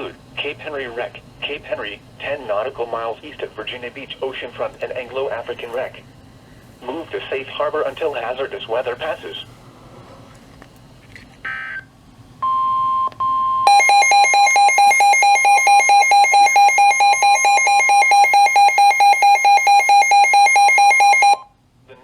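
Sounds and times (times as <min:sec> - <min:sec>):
electronic alarm beeping rapidly: 0:12.4 - 0:21.4
steady alarm tone: 0:12.4 - 0:21.5.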